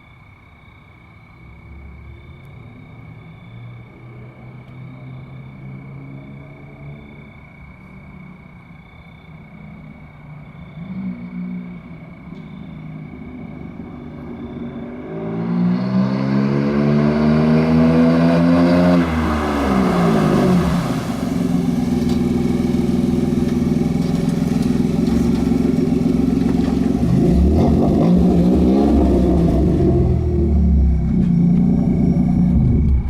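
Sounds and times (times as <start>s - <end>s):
car engine revving: 13.3s - 33.0s.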